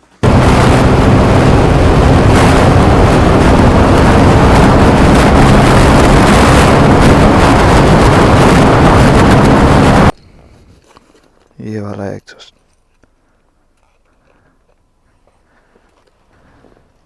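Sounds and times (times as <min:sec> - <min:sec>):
motorcycle engine running: 0:00.2 - 0:10.1.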